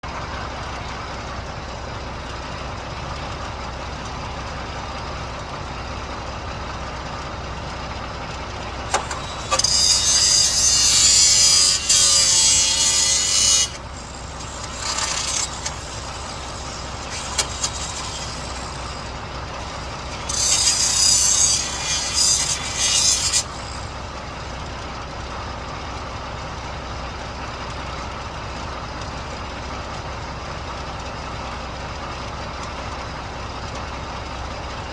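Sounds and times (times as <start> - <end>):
loud high hissing: 8.9 - 23.8.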